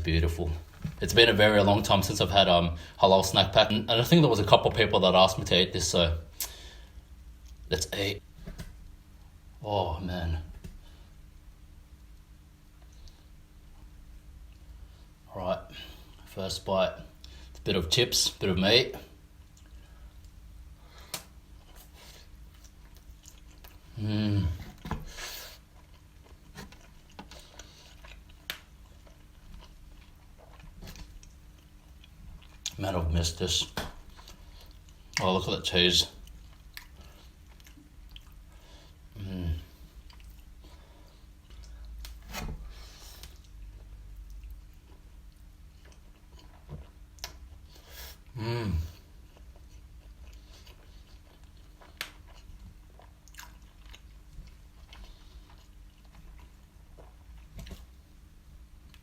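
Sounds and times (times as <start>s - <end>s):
person chewing food: 19.1s - 32.8s, 33.6s - 35.3s, 36.0s - 59.0s.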